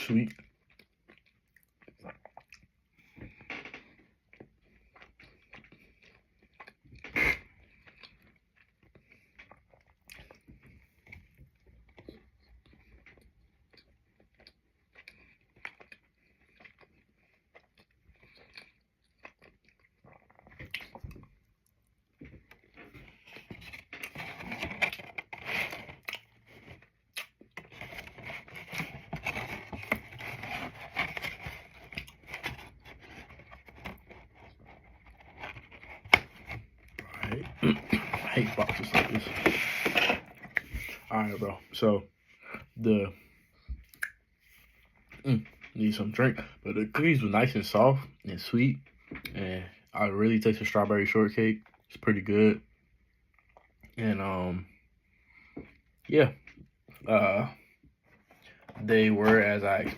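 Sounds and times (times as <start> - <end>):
person chewing cookies: 0.0 - 38.7, 53.0 - 54.0.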